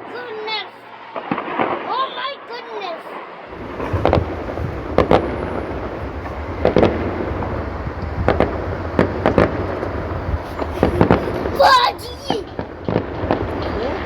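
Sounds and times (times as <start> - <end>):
distant fireworks bangs: 1.1 - 2.1, 3.5 - 14.0
steady low rumble: 3.5 - 14.0.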